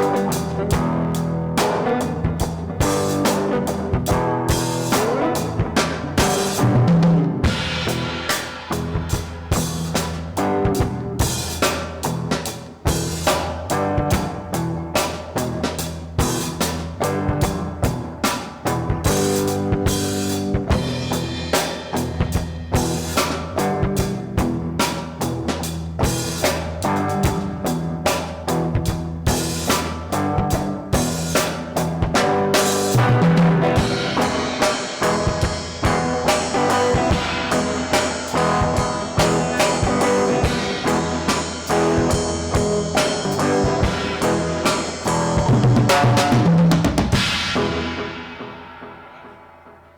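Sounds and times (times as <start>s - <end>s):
sustained guitar notes: 0.0s - 16.4s, 31.8s - 49.9s
drum beat: 0.0s - 24.5s, 30.4s - 48.2s.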